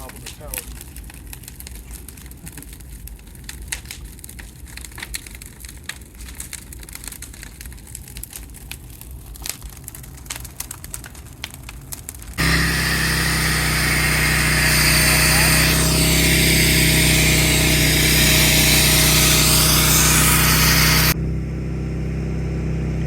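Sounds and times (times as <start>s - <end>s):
bonfire crackling and popping: 0.0s - 21.2s
loud motor hum: 12.4s - 23.0s.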